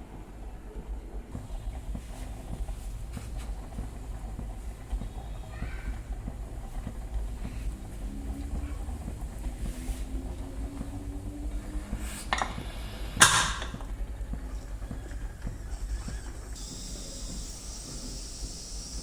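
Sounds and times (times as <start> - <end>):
pressure cooker rumbling: 1.3 - 19.0
sharp metal clank: 13.2 - 13.8.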